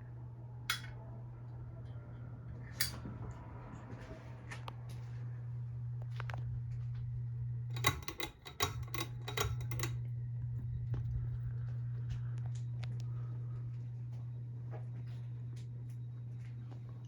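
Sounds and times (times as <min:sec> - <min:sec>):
ceiling fan motor humming: 0:00.0 - 0:17.0
sharp clicks and rattles: 0:07.7 - 0:10.0.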